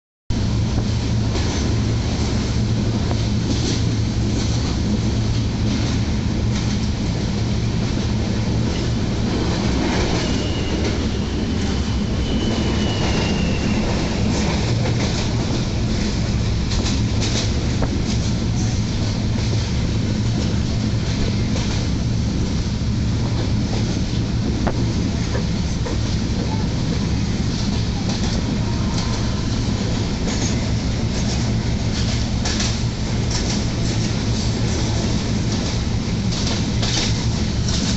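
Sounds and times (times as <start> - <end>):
train wheels rumbling on track: 0.3 - 37.9
rail joint clicks: 0.4 - 37.9
high wheel squeal: 10.0 - 14.5.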